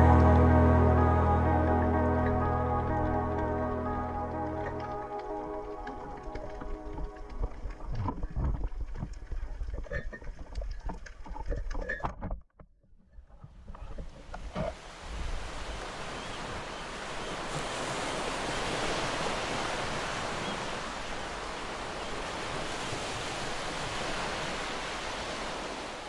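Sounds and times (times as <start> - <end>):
sea water rushing: 0.0 - 9.5, 14.8 - 26.0.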